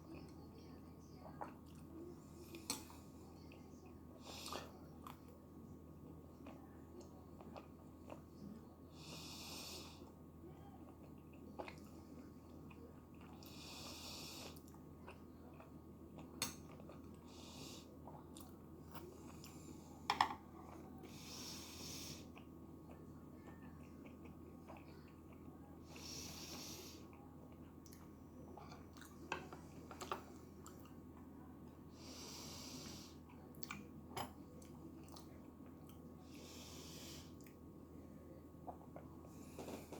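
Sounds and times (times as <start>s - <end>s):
person chewing food: 10.9s - 19.9s, 20.6s - 31.4s, 32.1s - 37.6s
short hissing breaths: 26.0s - 27.0s.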